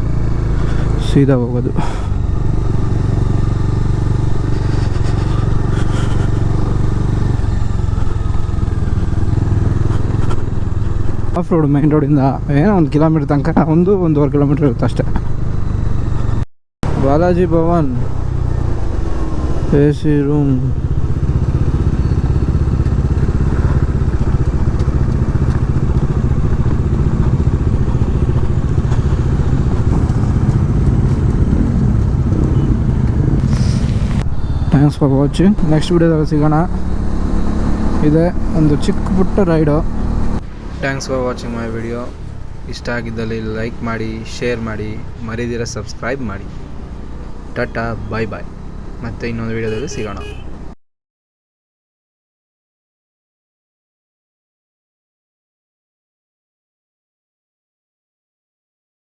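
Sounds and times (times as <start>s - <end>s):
motorcycle engine running: 0.0s - 12.6s, 15.0s - 45.2s
wind and road noise: 0.0s - 50.8s.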